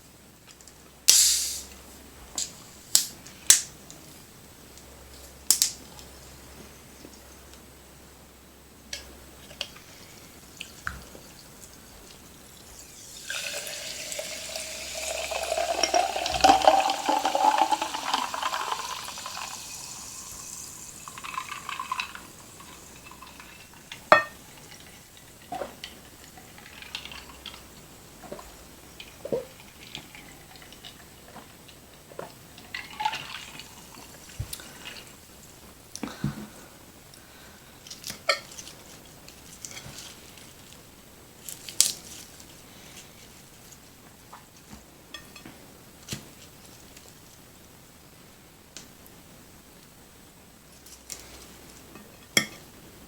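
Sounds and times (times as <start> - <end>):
liquid pouring into glass: 12.8 - 27.6, 32.7 - 34.4.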